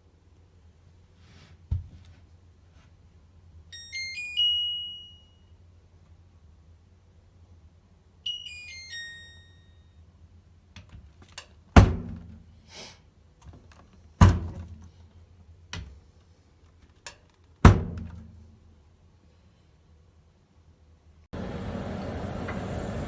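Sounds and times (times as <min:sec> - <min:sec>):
falling electronic chime: 0:03.8 - 0:05.4
hard thunks: 0:11.8 - 0:12.4, 0:14.2 - 0:14.8.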